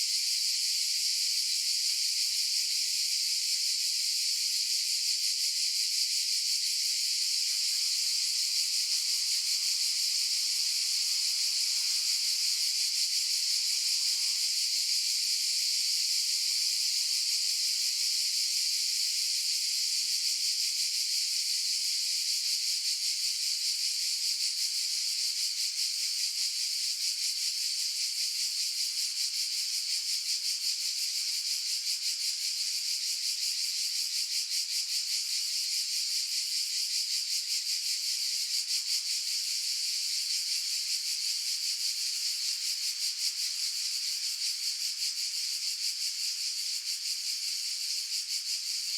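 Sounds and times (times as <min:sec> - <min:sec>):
cicadas buzzing: 0:07.3 - 0:18.1.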